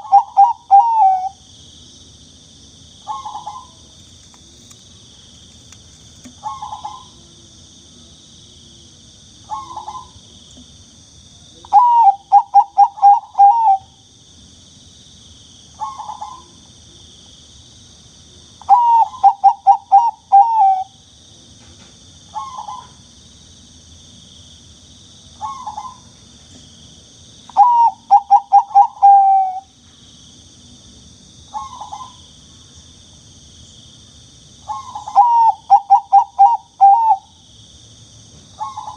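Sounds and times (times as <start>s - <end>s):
dove cooing: 0.0s - 1.4s, 3.0s - 3.8s, 6.4s - 7.2s, 9.5s - 10.2s, 11.7s - 13.9s, 15.8s - 16.6s, 18.7s - 20.9s, 25.4s - 26.0s, 27.6s - 29.7s, 34.7s - 37.3s, 38.6s - 38.9s
high insect hiss: 0.0s - 38.9s.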